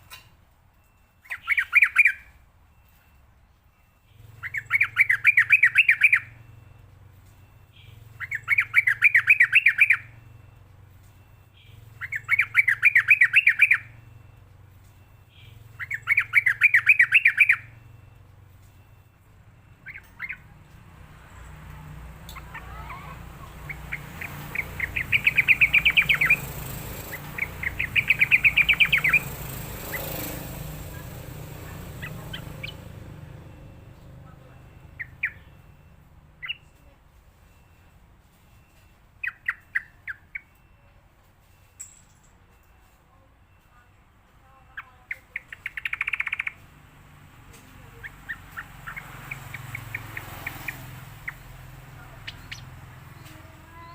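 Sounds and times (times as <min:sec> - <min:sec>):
bird chattering calls: 0:15.4 - 0:17.6, 0:22.2 - 0:33.5, 0:44.7 - 0:46.6, 0:47.9 - 0:53.9.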